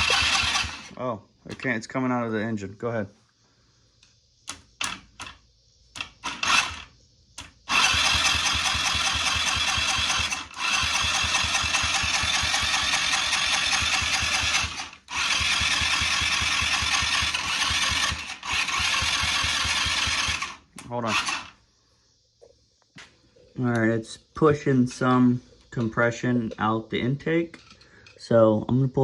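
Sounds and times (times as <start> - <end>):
scooter engine cranking: 0.0 - 1.0, 6.0 - 21.6.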